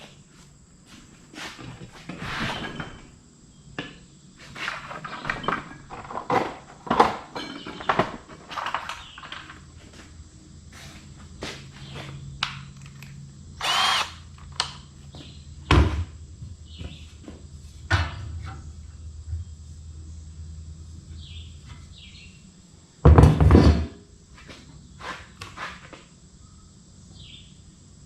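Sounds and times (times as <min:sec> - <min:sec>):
power drill bursts: 0:13.6 - 0:14.2.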